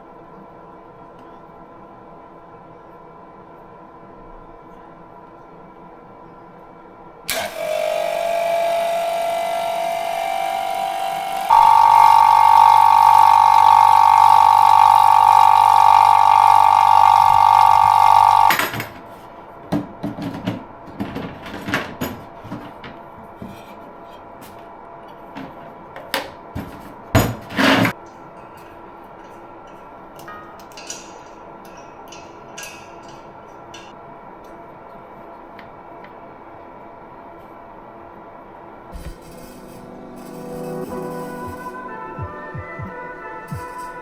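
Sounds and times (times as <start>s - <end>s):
gas hissing through a valve: 7.3s - 18.5s.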